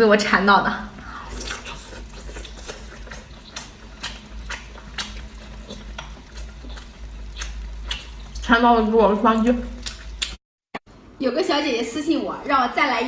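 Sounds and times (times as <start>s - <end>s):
person chewing with wet lip-smacking: 1.3s - 8.6s, 9.6s - 10.4s.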